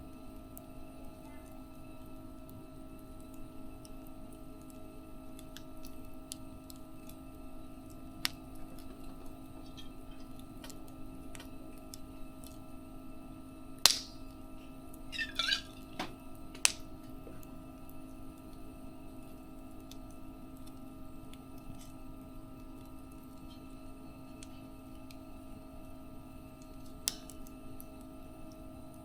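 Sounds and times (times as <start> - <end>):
steady hum: 0.0 - 29.0
wood fire crackling: 0.0 - 29.0
loud sharp pops: 13.8 - 14.4.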